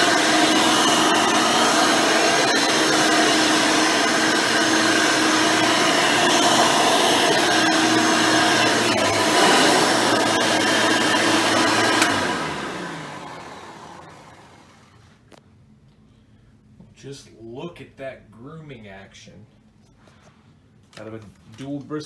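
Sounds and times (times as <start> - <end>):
vacuum cleaner running: 0.0 - 15.1.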